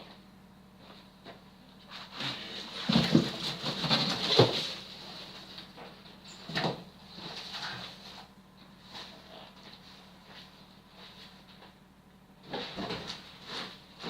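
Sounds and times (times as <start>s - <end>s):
faint low hum: 0.0s - 14.0s
objects knocking and scraping: 2.2s - 8.2s.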